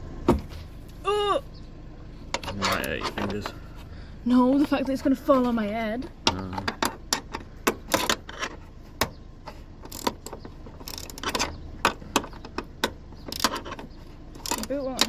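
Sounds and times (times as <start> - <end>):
metal scraping rattles: 2.3 - 15.0
metal clicks and knocks: 6.2 - 15.0.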